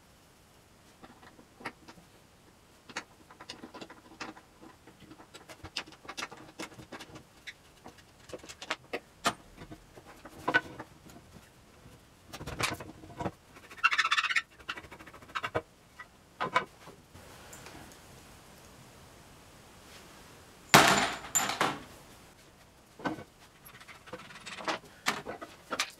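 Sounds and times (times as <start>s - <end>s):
tools clicking and knocking on wood: 2.8s - 11.4s, 20.8s - 21.9s, 23.0s - 25.9s.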